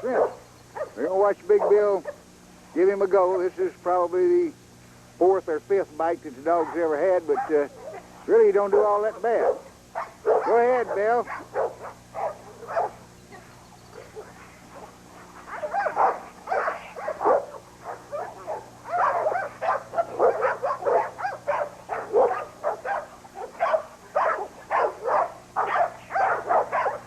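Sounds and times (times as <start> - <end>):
dog barking: 0.0 - 2.3, 6.6 - 13.0, 13.9 - 27.0
faint steady hum: 0.0 - 27.0.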